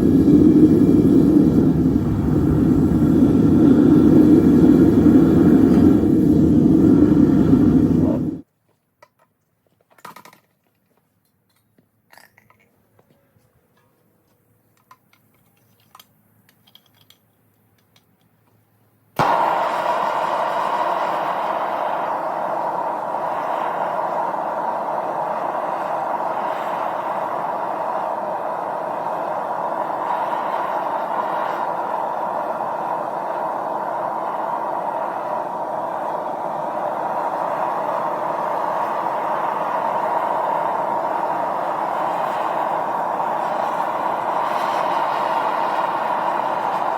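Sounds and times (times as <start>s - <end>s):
furnace forced air rushing: 0.0s - 8.5s, 19.2s - 46.9s
low background hum: 11.2s - 46.9s.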